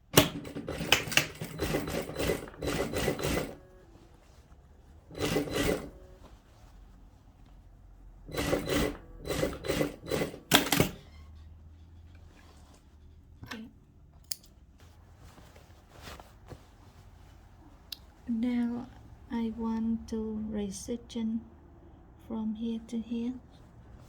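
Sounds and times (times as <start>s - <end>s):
sewing machine stitching: 0.0s - 3.8s, 5.1s - 6.2s, 8.2s - 11.2s.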